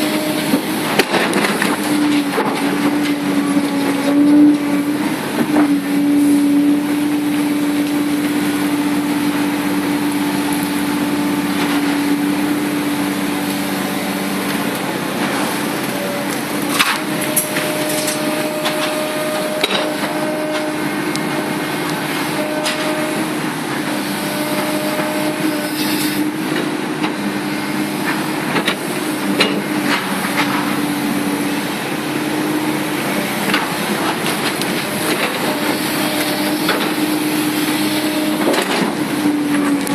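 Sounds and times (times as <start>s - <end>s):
high whine: 0.0s - 26.6s
excavator diesel engine running: 0.0s - 39.9s.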